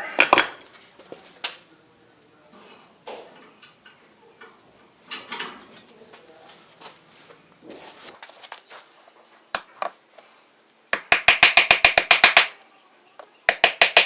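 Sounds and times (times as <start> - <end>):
faint handling noise: 0.6 - 10.9.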